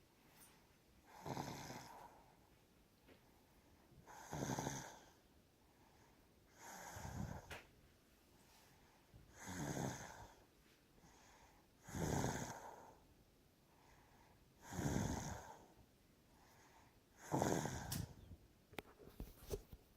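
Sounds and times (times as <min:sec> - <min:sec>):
quiet breathing: 0:00.0 - 0:18.4
loud snoring: 0:01.1 - 0:02.1, 0:04.1 - 0:05.1, 0:06.6 - 0:07.5, 0:09.3 - 0:10.4, 0:11.8 - 0:12.9, 0:14.6 - 0:15.7, 0:17.2 - 0:18.1.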